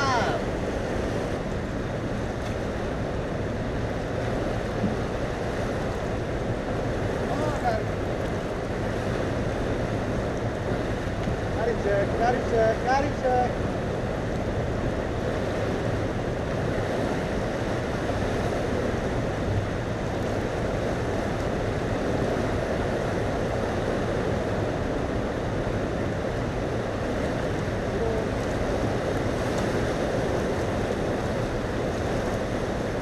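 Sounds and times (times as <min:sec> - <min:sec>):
turbulent river water rushing: 0:00.0 - 0:33.0
wind on microphone: 0:00.0 - 0:33.0.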